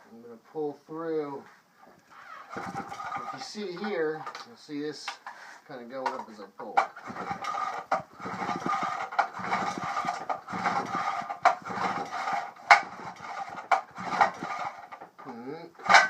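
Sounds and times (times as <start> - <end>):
engine cranking against compression: 2.1 - 4.5, 6.8 - 16.0
recoil starter rope pulls: 2.1 - 5.1, 6.1 - 16.0.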